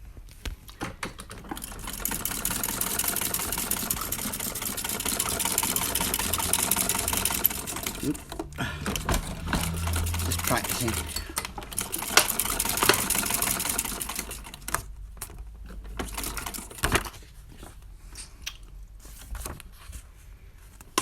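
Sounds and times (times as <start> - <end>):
sewing machine clattering: 0.8 - 17.2.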